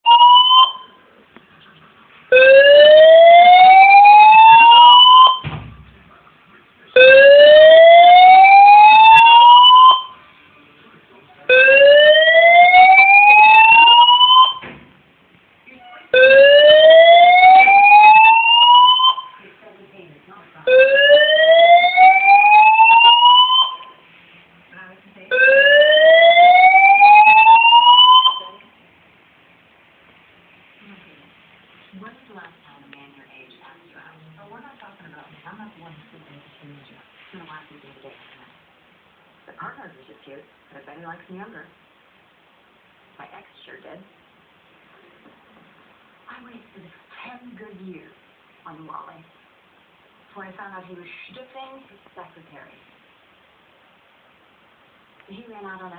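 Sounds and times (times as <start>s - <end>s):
fire alarm rising whoop: 0.0s - 0.9s, 2.4s - 5.4s, 7.0s - 10.1s, 11.5s - 14.6s, 16.1s - 19.3s, 20.7s - 23.9s, 25.3s - 28.6s.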